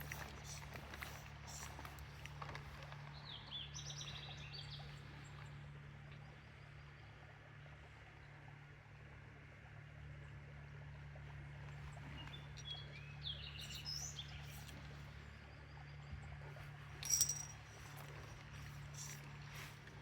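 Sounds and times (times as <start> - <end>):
steady low hum: 4.1 - 20.0
bird chirping: 12.2 - 14.7.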